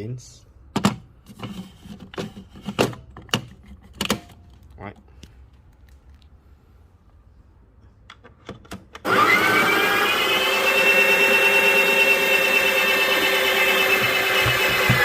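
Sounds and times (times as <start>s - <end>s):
coffee grinder motor whine: 9.0s - 15.0s.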